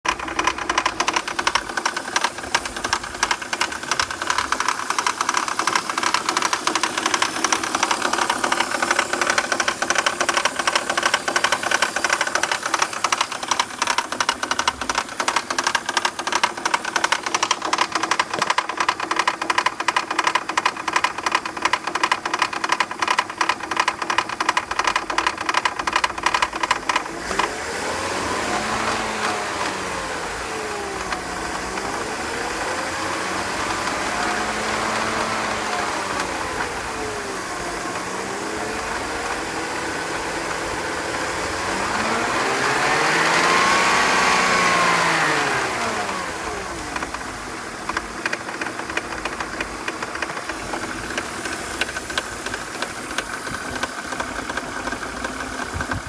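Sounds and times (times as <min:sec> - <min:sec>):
car engine running: 0:00.0 - 0:56.0
fast metallic rattle: 0:00.1 - 0:27.5.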